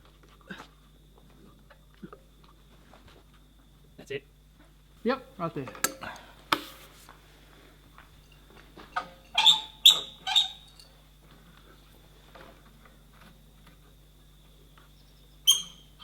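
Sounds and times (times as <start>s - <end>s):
steady low hum: 0.0s - 16.0s
metallic clinks and knocks: 10.6s - 11.0s.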